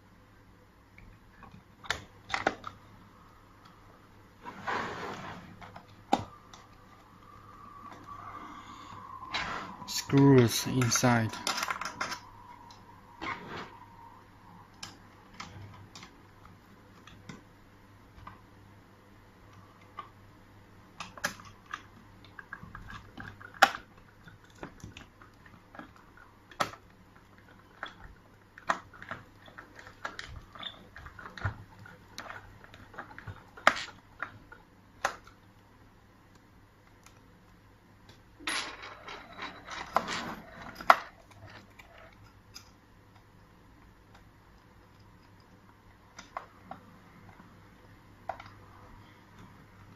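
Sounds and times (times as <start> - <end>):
metal hardware clicking and clattering: 38.4 - 41.1.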